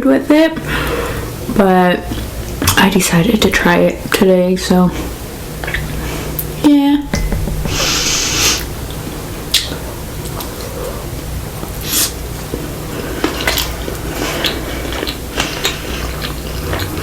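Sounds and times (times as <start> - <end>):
wet chewing noises: 12.9 - 17.0.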